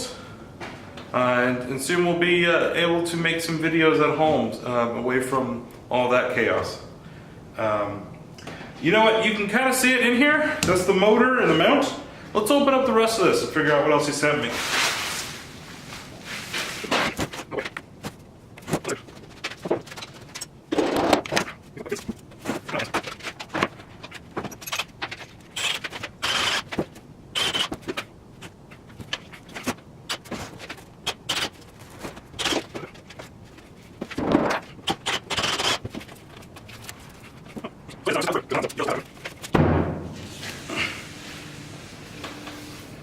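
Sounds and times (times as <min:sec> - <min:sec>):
clunks and scrapes of handled parts: 0:16.2 - 0:38.0, 0:38.7 - 0:39.5.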